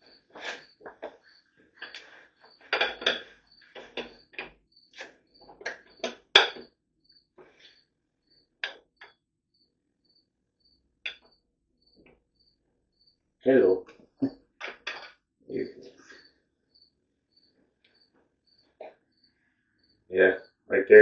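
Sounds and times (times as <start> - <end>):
metal clinks and knocks: 0.0 - 6.8, 14.6 - 15.3
cricket chirping: 0.0 - 21.0.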